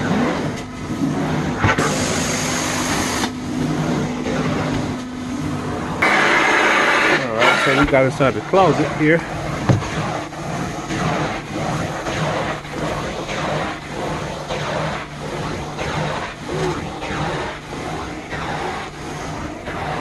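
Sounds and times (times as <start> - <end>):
cleaning machine hum: 0.0 - 20.0
extraction wand suction: 6.0 - 20.0.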